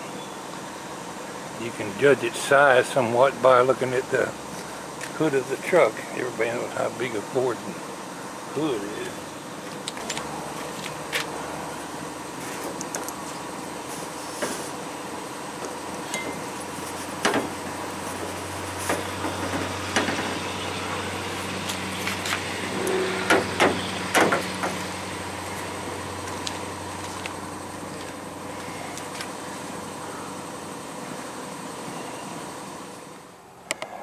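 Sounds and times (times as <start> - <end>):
steady low hum: 0.0 - 34.0
knocks and clunks of handling metal: 17.2 - 17.6, 18.8 - 20.4, 23.3 - 24.8.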